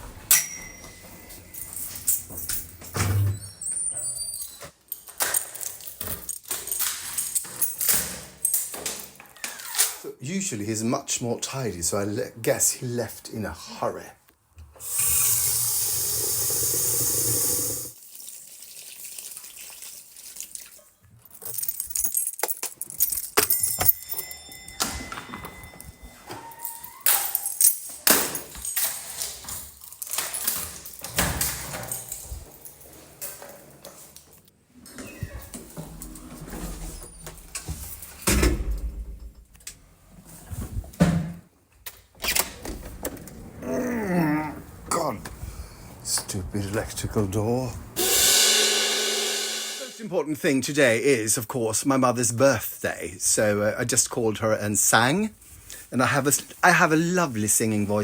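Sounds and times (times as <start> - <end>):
keys jangling: 0.3 - 9.9, 21.2 - 34.4
water tap running: 14.8 - 20.9.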